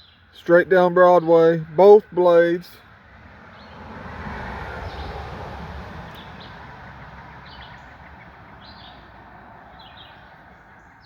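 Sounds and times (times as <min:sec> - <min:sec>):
birds chirping: 0:00.0 - 0:02.8, 0:03.5 - 0:03.9, 0:06.1 - 0:11.0.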